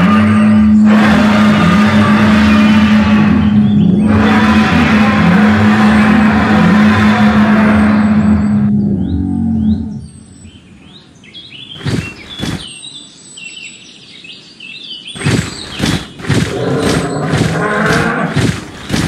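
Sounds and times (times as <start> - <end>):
rumbling animal-like sound: 0.0 - 10.0, 11.8 - 12.7, 15.2 - 19.0
small birds chirping: 2.8 - 4.4, 8.6 - 19.0
loud evenly spaced thumps: 11.7 - 12.7, 15.2 - 19.0
heavy thuds: 11.8 - 12.7, 15.2 - 19.0.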